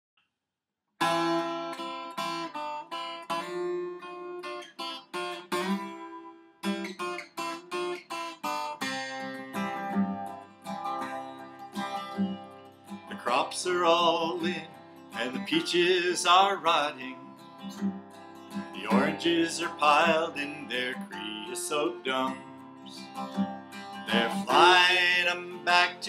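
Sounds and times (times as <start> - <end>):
acoustic guitar strumming: 1.0 - 26.0.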